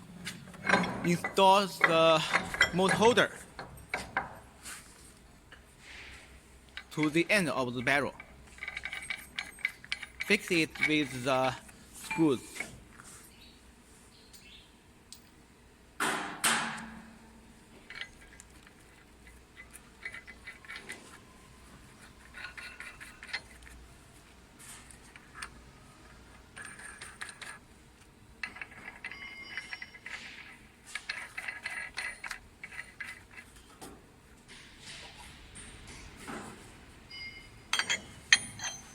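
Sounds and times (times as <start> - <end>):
sharp metal clanks: 37.1 - 38.9.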